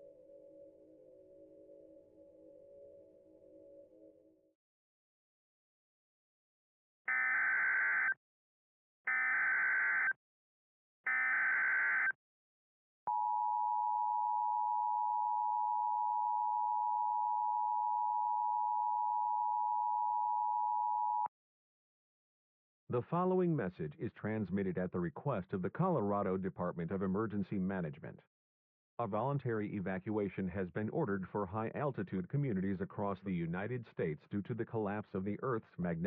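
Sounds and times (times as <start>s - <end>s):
two-tone alarm: 7.1s - 8.2s, 9.1s - 10.2s, 11.1s - 12.2s.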